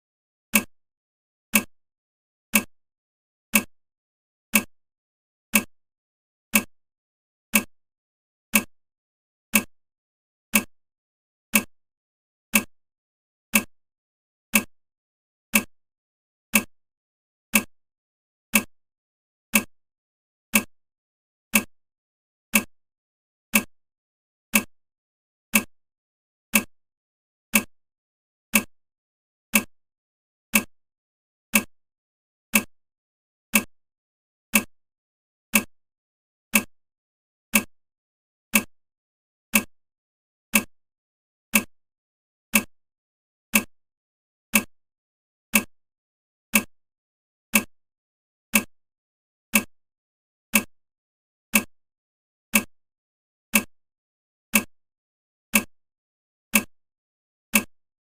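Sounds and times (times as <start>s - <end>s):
clock ticking: 0.5s - 0.7s, 1.5s - 1.7s, 2.5s - 2.7s, 3.5s - 3.7s, 4.5s - 4.7s, 5.5s - 5.7s, 6.5s - 6.7s, 7.5s - 7.7s, 8.5s - 8.7s, 9.5s - 9.7s, 10.5s - 10.7s, 11.5s - 11.7s, 12.5s - 12.7s, 13.5s - 13.7s, 14.5s - 14.7s, 15.5s - 15.7s, 16.5s - 16.7s, 17.5s - 17.7s, 18.5s - 18.7s, 20.5s - 20.7s, 21.5s - 21.7s, 22.5s - 22.7s, 23.5s - 23.7s, 24.5s - 24.7s, 25.5s - 25.7s, 26.5s - 26.7s, 27.5s - 27.7s, 28.5s - 28.7s, 29.5s - 29.7s, 30.5s - 30.7s, 31.5s - 31.7s, 32.5s - 32.7s, 34.5s - 34.7s, 36.5s - 36.7s, 38.5s - 38.7s, 39.5s - 39.7s, 40.5s - 40.7s, 41.5s - 41.7s, 42.5s - 42.7s, 43.5s - 43.7s, 44.5s - 44.7s, 45.5s - 45.7s, 46.5s - 46.7s, 48.5s - 48.7s, 57.5s - 57.7s.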